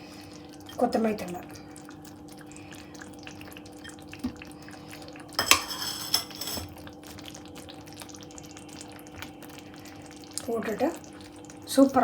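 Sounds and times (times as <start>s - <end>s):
metal cookware clinking: 5.4s - 6.8s.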